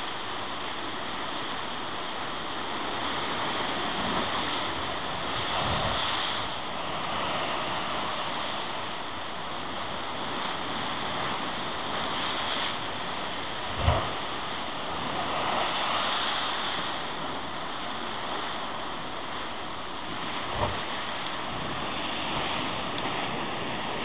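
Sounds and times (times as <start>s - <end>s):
surf on rocky shore: 0.0s - 24.0s
wind: 0.0s - 24.0s.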